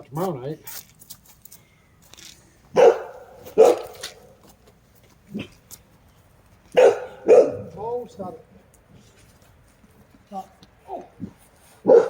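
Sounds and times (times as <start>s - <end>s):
dog barking: 2.7s - 4.4s, 6.8s - 7.8s.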